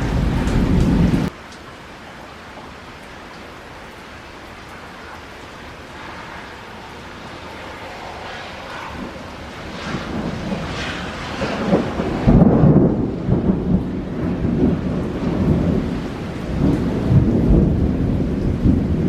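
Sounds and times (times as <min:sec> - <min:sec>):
thunder rolling: 0:00.0 - 0:01.3, 0:06.0 - 0:19.0
heavy rain: 0:00.0 - 0:19.0.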